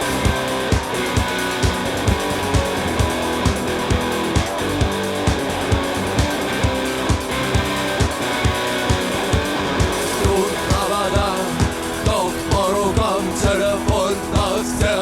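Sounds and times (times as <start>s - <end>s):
drum beat: 0.0s - 15.0s
rock song with electric guitar: 0.0s - 15.0s
person singing: 10.0s - 15.0s.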